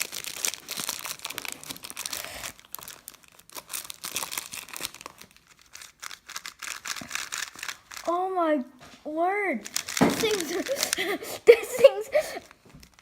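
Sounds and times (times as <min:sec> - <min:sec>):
plastic packaging crinkling: 0:00.0 - 0:08.1, 0:09.6 - 0:13.0.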